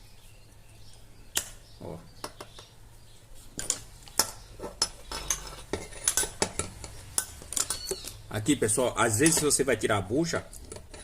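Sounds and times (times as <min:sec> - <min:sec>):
metallic clicks and clinks: 0:03.6 - 0:08.2.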